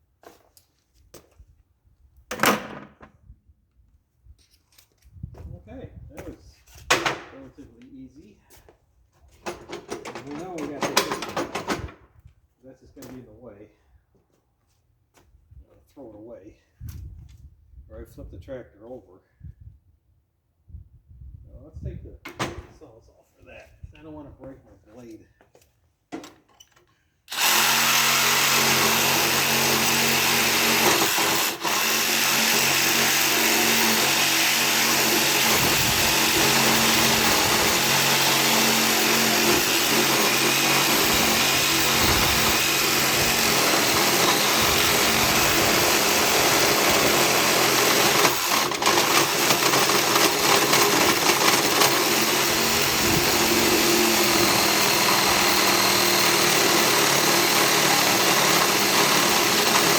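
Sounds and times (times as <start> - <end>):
electric power saw cutting metal: 27.3 - 59.9.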